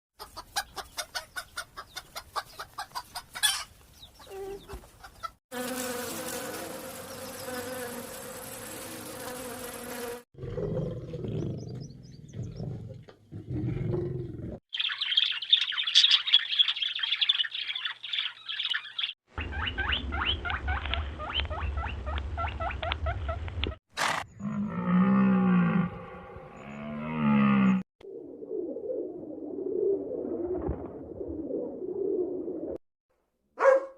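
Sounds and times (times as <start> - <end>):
insects buzzing and chirping: 5.6 - 10.2.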